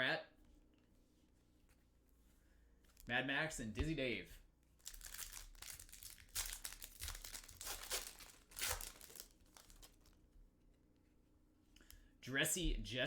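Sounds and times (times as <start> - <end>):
plastic wrapper crinkling and tearing: 4.8 - 10.2.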